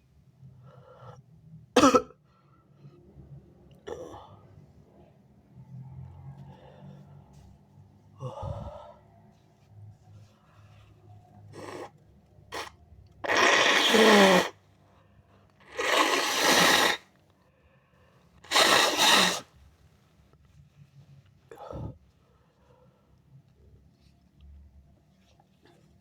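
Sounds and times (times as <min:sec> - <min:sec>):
person blowing nose: 0:11.5 - 0:14.6, 0:15.7 - 0:17.1, 0:18.4 - 0:19.6.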